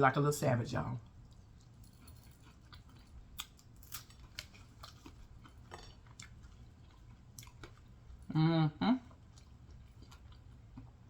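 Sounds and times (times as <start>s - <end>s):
person chewing fried fish: 1.0s - 8.3s, 9.0s - 11.0s.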